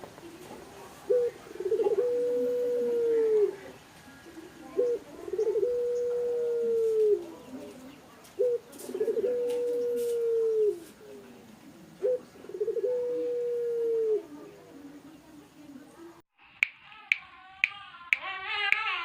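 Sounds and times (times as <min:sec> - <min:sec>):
dove cooing song: 0:00.2 - 0:14.9.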